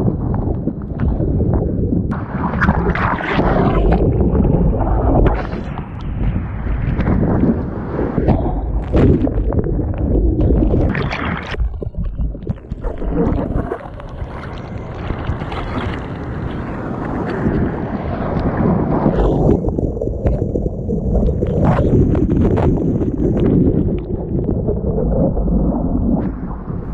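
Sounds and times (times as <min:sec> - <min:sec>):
wind buffeting microphone: 0:00.0 - 0:26.9
breaking surf: 0:12.6 - 0:23.4.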